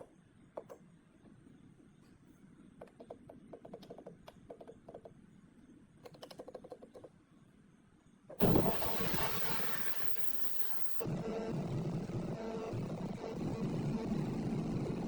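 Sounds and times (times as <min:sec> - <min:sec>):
hissing power tool: 0:08.4 - 0:11.0.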